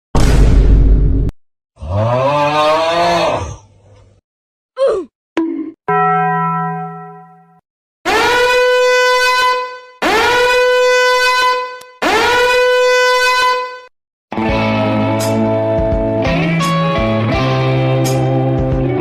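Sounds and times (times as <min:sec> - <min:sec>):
loud horn blasts: 0:08.1 - 0:13.9.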